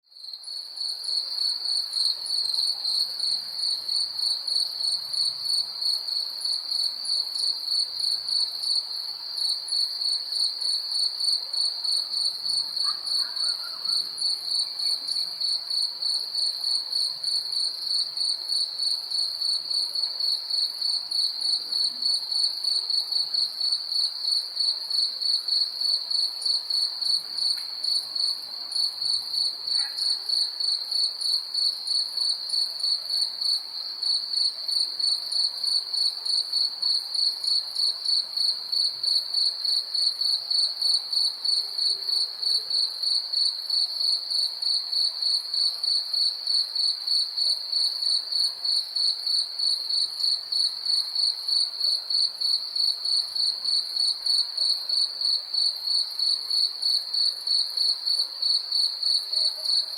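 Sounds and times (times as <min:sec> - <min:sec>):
cricket chirping: 0:20.2 - 0:59.9.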